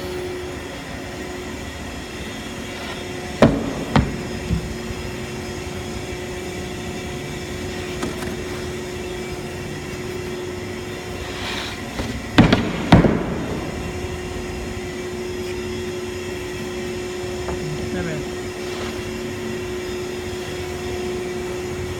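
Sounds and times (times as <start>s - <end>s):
cnc wood router humming: 0.0s - 21.9s
loud knocks: 3.4s - 4.9s, 12.3s - 14.3s.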